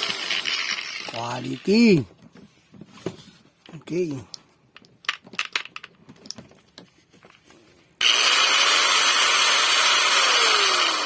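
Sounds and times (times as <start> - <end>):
angle grinder whirring: 0.0 - 1.9, 8.0 - 11.0.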